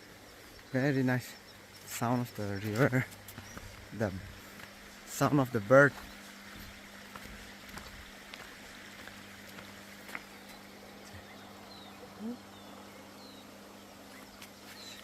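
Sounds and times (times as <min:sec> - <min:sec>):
river flowing: 0:03.0 - 0:15.0
faint bird chirps: 0:10.3 - 0:15.0.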